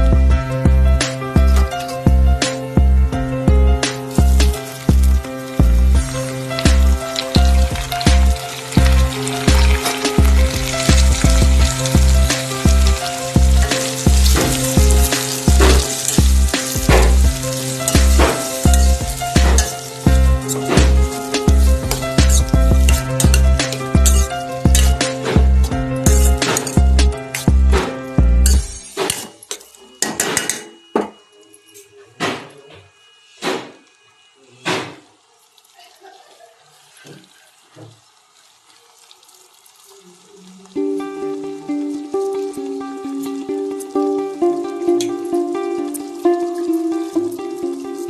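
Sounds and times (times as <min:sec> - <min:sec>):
background music with beat: 0:00.0 - 0:29.1, 0:40.8 - 0:48.0
food sizzling in a pan: 0:00.0 - 0:48.0
utensils clinking against dishes: 0:12.3 - 0:27.5, 0:28.5 - 0:33.9.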